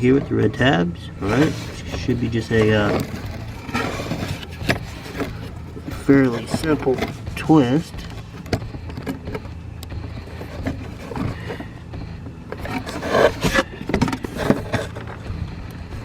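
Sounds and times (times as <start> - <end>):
plastic scraping and rustling: 0.0 - 11.8, 12.4 - 15.4.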